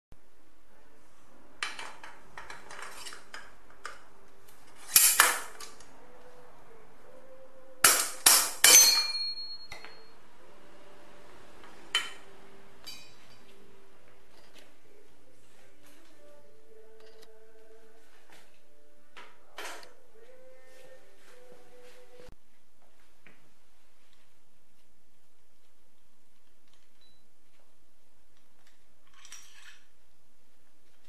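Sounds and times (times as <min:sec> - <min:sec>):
ringing metal strikes: 0:07.8 - 0:10.2, 0:11.9 - 0:13.5
metal tools clinking: 0:08.4 - 0:10.1, 0:12.8 - 0:13.6, 0:29.0 - 0:29.9.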